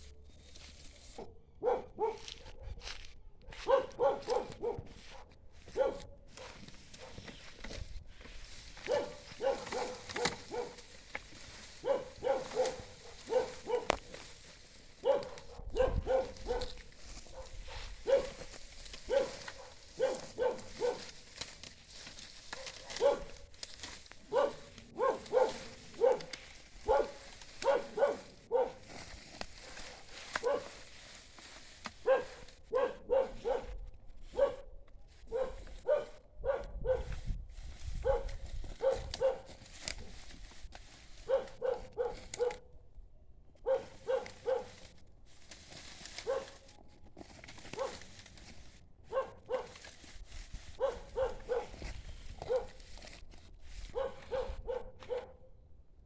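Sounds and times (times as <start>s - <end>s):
dog barking: 1.2s - 2.8s, 3.4s - 7.2s, 8.8s - 10.9s, 11.8s - 14.2s, 15.0s - 21.2s, 22.5s - 23.5s, 24.3s - 28.9s, 30.4s - 30.8s, 32.0s - 37.2s, 38.0s - 40.1s, 41.2s - 42.7s, 43.6s - 44.8s, 46.2s - 46.6s, 47.8s - 48.0s, 49.0s - 49.8s, 50.8s - 51.8s, 52.4s - 52.8s, 53.9s - 55.6s.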